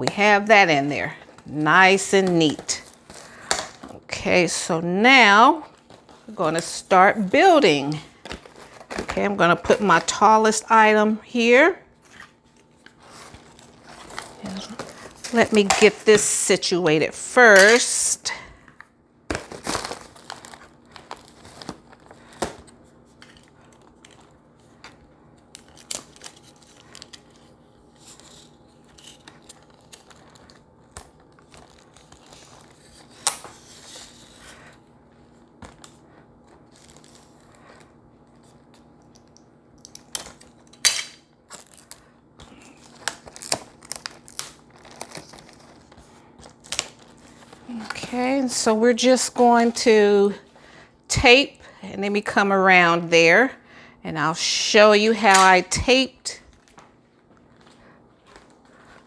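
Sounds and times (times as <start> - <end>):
faint steady hum: 0.0 - 59.0
paper crinkling and rustling: 1.1 - 4.0, 5.1 - 10.8, 11.9 - 16.3, 19.2 - 48.5, 56.4 - 59.0.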